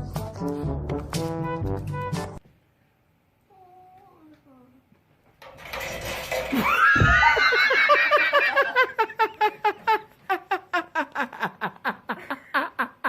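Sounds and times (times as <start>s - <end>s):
person laughing: 7.1s - 13.0s.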